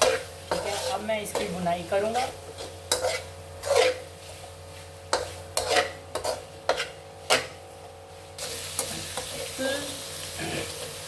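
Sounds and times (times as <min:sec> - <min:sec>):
spoon scraping a pan: 0:00.0 - 0:07.6, 0:08.4 - 0:09.6
oil sizzling: 0:00.0 - 0:11.0.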